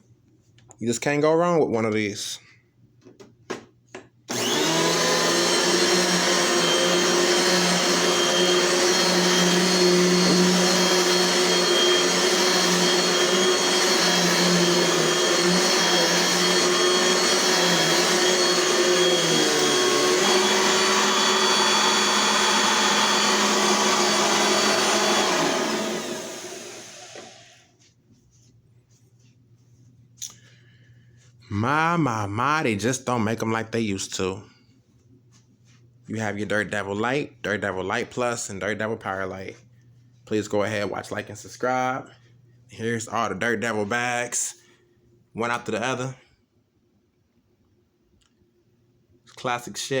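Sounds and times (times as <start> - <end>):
vacuum motor winding down: 4.3 - 27.6
vacuum cleaner running: 4.3 - 27.8.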